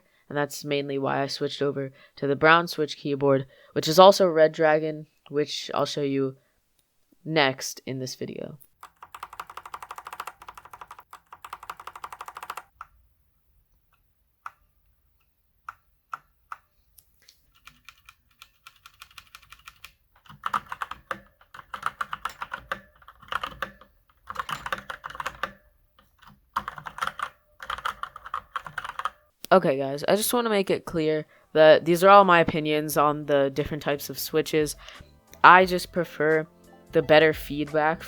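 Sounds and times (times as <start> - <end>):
mechanical keyboard typing: 8.8 - 12.9, 17.5 - 29.2.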